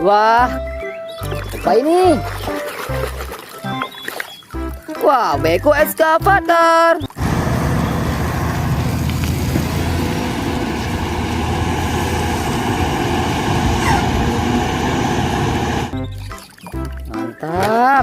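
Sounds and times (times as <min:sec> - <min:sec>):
motor running with hiss: 0:07.2 - 0:15.9.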